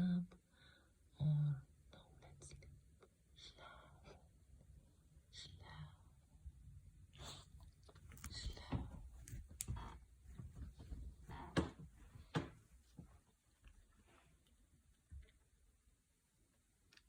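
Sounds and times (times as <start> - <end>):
soft knocks and clicks: 8.5 - 13.2.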